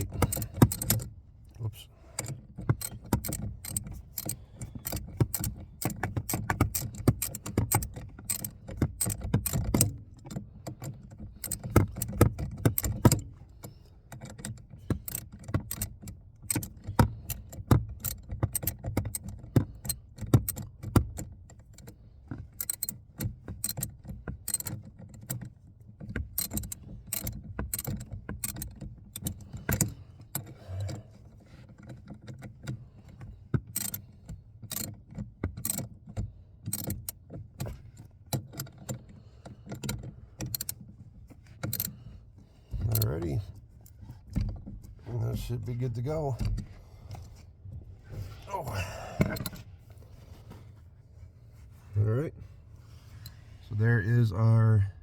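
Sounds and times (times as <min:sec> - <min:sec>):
low rumble of handling: 0:38.9 - 0:55.0.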